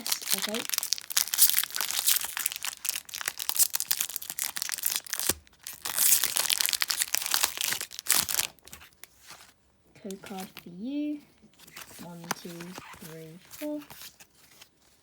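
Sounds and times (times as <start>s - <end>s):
foil wrapper crinkling and tearing: 0.0s - 9.4s.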